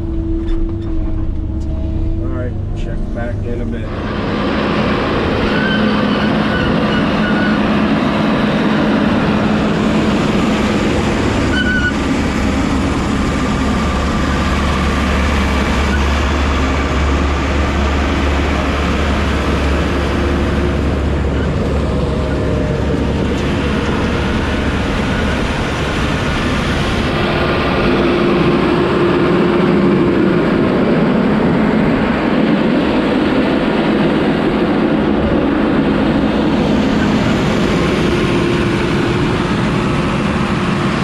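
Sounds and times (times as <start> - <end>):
diesel machine engine drone: 0.0 - 41.0
high metallic squeaks: 11.5 - 12.0.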